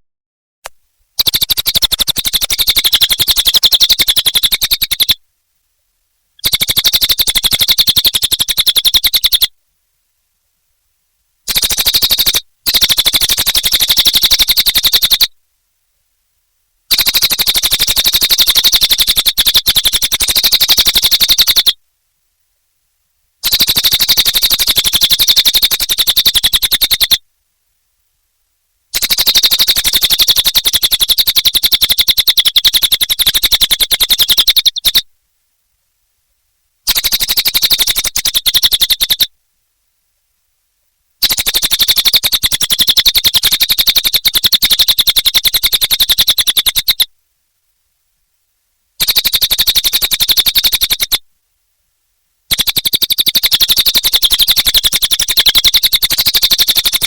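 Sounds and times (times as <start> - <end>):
bird singing fast high trill: 1.2 - 5.2, 6.4 - 9.5, 11.5 - 15.3, 16.9 - 21.8, 23.4 - 27.2, 29.0 - 35.0, 36.9 - 39.3, 41.2 - 47.1.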